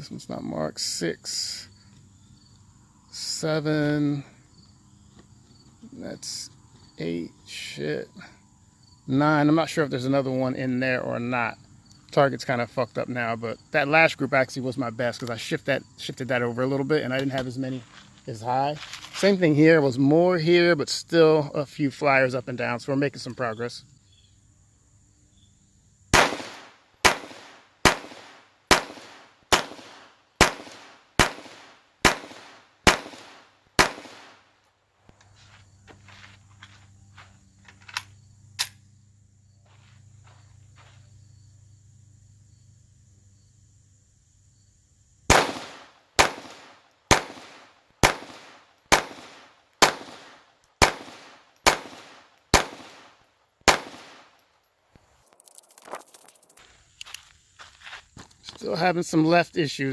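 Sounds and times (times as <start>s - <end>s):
pistol shots echoing: 26.2s - 34.5s, 45.3s - 54.4s.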